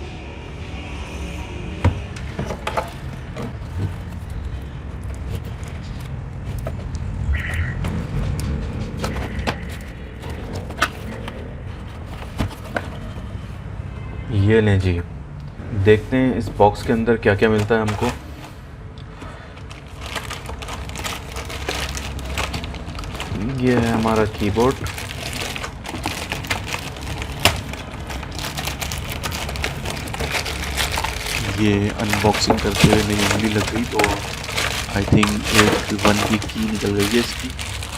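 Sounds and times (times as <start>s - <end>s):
cardboard box rustling and scraping: 7.8s - 13.6s, 19.7s - 37.9s.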